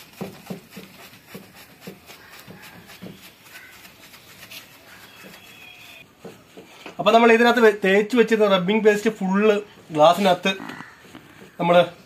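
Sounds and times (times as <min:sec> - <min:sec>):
cloth wiping plastic lens: 0:00.0 - 0:07.0.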